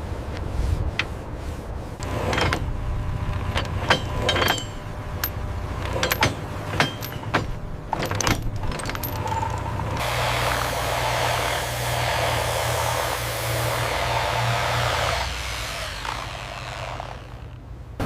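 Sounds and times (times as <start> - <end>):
steady low hum: 0.0 - 18.0
sharp clicks and knocks: 3.3 - 10.0.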